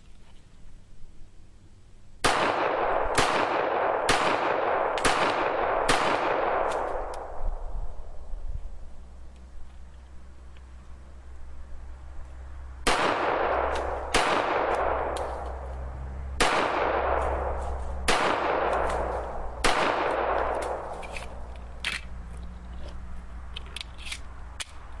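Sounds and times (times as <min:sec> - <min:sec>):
pistol shots with echo: 0:02.2 - 0:07.4, 0:12.8 - 0:15.2, 0:16.4 - 0:20.9.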